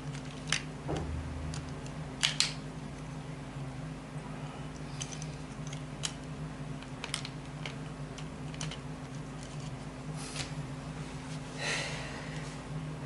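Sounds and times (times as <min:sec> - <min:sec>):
plastic parts clicking and clattering: 0:00.0 - 0:00.7, 0:06.8 - 0:09.7
steady low hum: 0:00.0 - 0:13.0.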